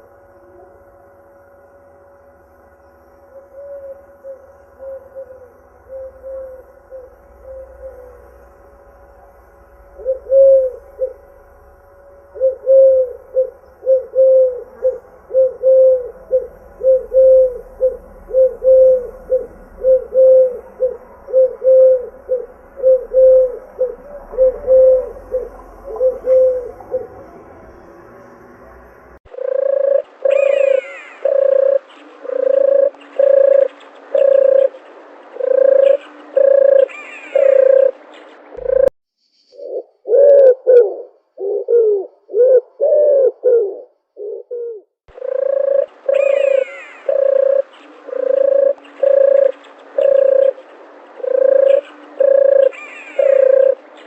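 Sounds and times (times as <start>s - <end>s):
low hum: 0.0s - 39.4s
higher gliding bird calls: 2.8s - 27.6s, 29.3s - 54.0s
doves cooing: 3.3s - 8.4s, 9.9s - 27.6s, 29.3s - 38.9s, 39.6s - 54.0s.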